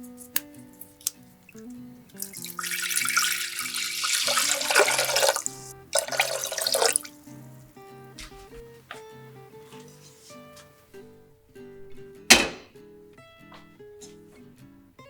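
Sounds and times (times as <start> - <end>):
light background music: 0.0 - 15.0
stream water running: 0.8 - 7.3.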